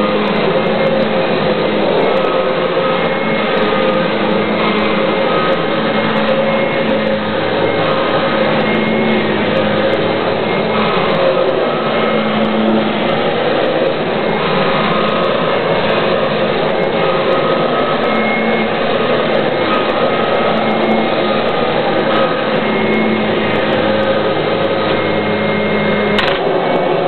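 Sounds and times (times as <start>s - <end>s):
faint whining tones: 0.0s - 27.0s
vacuum cleaner on carpet: 0.0s - 27.0s.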